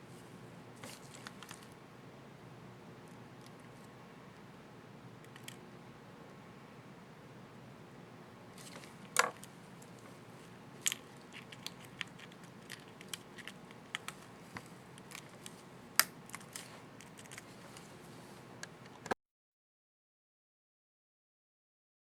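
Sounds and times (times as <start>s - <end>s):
sharp plastic snaps: 11.6s - 17.4s.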